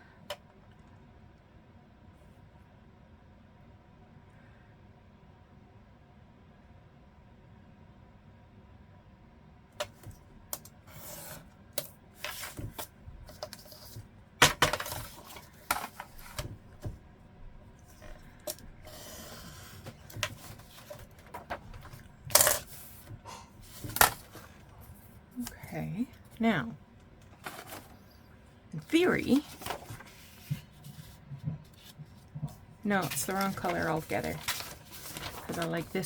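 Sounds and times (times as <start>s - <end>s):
paper rustling: 12.2s - 17.0s, 17.8s - 25.6s, 27.2s - 28.2s, 28.8s - 36.0s.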